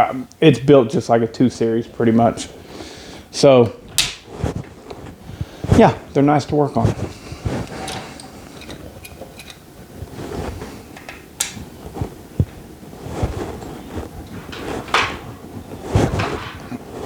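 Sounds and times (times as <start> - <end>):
tools and parts clicking: 7.8 - 9.6.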